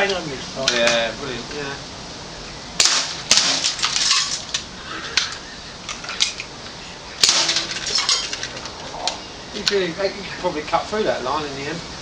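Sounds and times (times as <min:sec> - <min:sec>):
small objects clattering: 0:03.5 - 0:04.7, 0:07.3 - 0:09.8.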